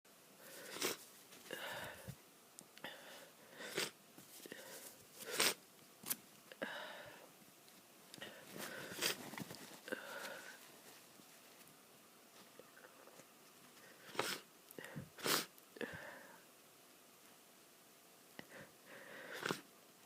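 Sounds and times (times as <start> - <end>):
person sniffling: 2.9 - 5.6, 13.9 - 16.4.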